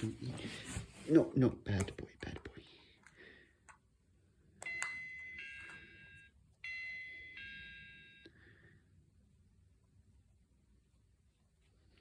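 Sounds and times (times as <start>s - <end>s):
doorbell click: 4.6s - 8.3s
doorbell ding-dong chime: 4.6s - 8.4s.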